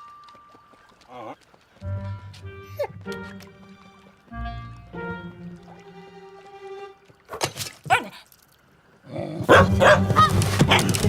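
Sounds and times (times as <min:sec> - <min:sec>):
soft background music: 0:01.8 - 0:07.3
dog barking: 0:07.9 - 0:08.2, 0:09.4 - 0:10.9.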